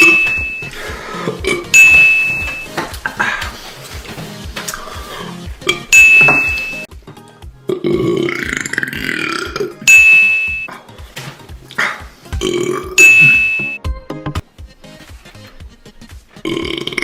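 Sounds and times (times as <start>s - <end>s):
bright chime: 0.0s - 0.8s, 1.8s - 2.7s, 5.9s - 6.9s, 9.9s - 10.7s, 13.0s - 13.8s
background music with steady beat: 0.0s - 17.0s
long burp: 1.2s - 1.8s, 7.7s - 9.9s, 11.8s - 13.0s, 16.4s - 17.0s.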